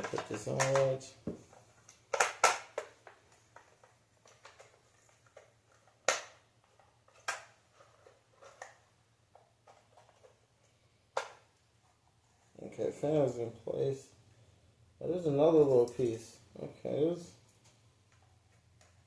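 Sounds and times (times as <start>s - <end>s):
plastic parts clicking and tapping: 0.0s - 12.0s
sharp plastic snaps: 1.8s - 7.6s.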